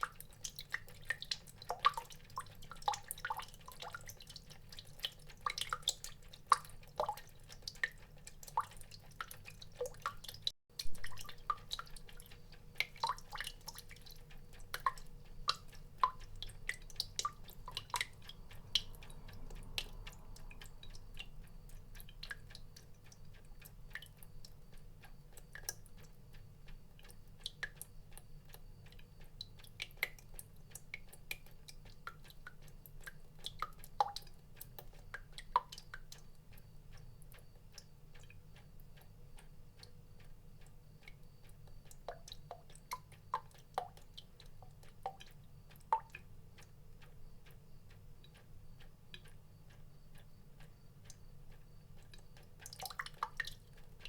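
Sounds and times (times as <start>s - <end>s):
water drops plinking: 10.8s - 12.2s.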